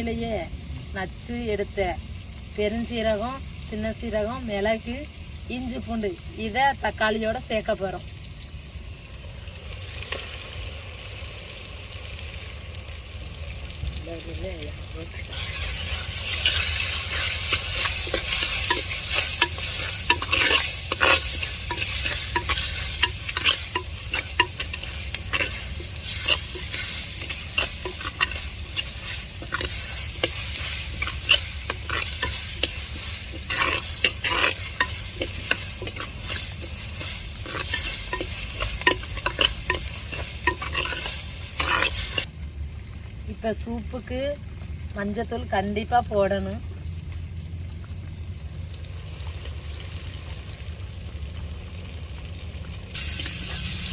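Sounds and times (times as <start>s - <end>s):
food sizzling in hot oil: 0.0s - 53.9s
spoon scraping and clicking on pan: 16.4s - 42.3s.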